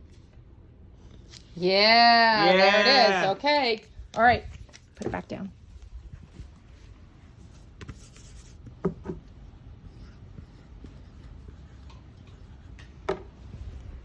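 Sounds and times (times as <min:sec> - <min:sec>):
soft rubbing on whiteboard: 0:06.1 - 0:12.8.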